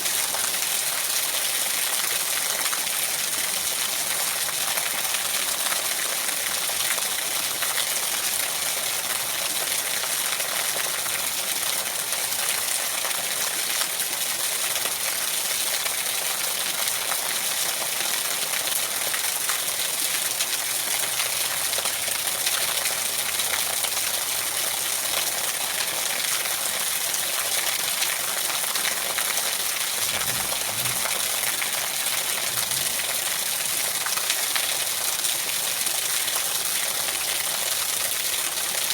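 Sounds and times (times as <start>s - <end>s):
heavy rain falling: 28.8s - 35.1s.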